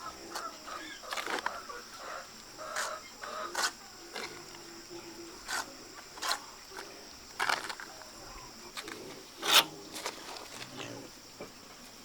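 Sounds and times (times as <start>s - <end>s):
hand tools scraping and knocking: 5.5s - 7.9s, 8.8s - 10.7s.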